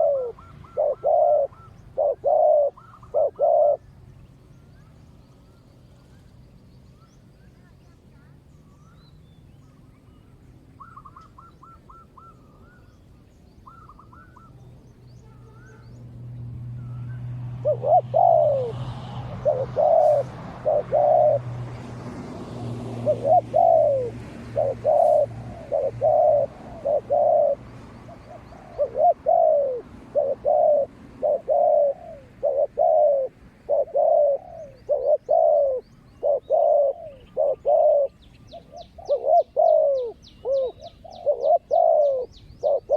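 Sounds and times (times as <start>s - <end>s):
doves cooing: 0.0s - 4.0s, 16.7s - 42.9s
small birds chirping: 0.0s - 42.9s.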